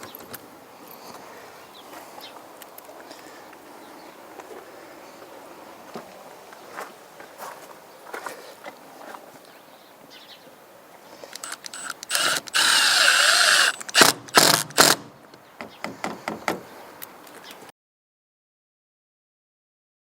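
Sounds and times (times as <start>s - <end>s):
cordless drill driving screw: 11.4s - 15.1s.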